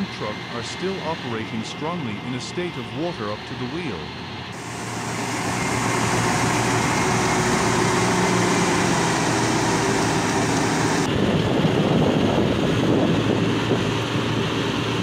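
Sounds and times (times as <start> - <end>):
diesel engine drone: 0.0 - 15.0
broad hiss: 4.6 - 11.1.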